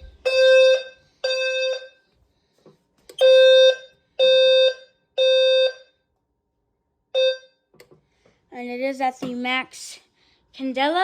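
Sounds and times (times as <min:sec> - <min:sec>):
fire alarm horn blasts: 0:00.0 - 0:02.1, 0:03.2 - 0:06.0, 0:07.2 - 0:07.6.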